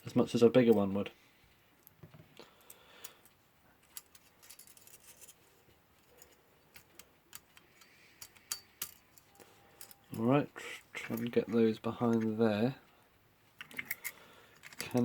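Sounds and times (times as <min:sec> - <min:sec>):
faint clicks of clock parts: 0:06.1 - 0:10.2.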